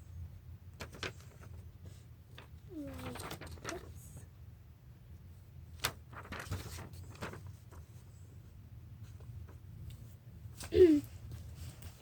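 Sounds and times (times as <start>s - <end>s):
low steady hum: 0.0s - 12.0s
faint scratchy sounds: 0.8s - 4.5s.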